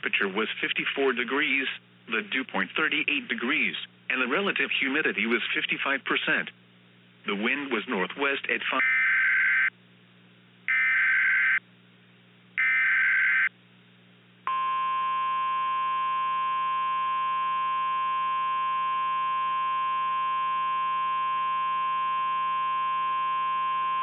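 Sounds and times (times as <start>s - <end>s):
buzzy data tone bursts: 10.7s - 11.6s, 12.6s - 13.5s
steady warning alarm tone: 10.7s - 11.6s, 12.6s - 13.5s, 14.5s - 24.0s.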